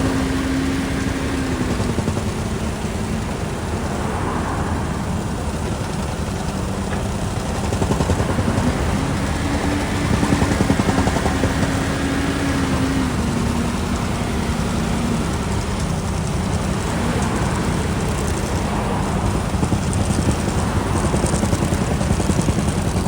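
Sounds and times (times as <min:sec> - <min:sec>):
diesel engine running: 0:00.0 - 0:23.0.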